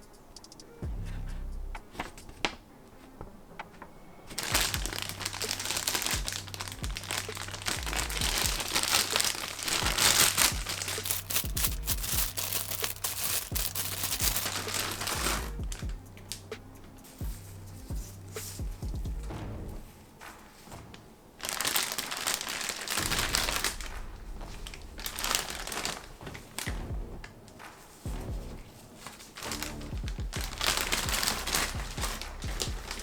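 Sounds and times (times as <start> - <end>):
plastic packaging crinkling: 4.3 - 17.2, 20.6 - 26.7, 28.7 - 33.0.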